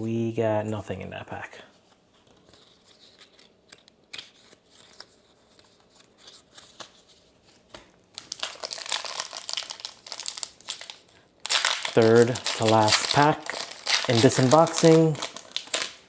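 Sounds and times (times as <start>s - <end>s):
trading cards being handled: 2.2s - 16.0s
foil wrapper crinkling open: 8.1s - 16.0s.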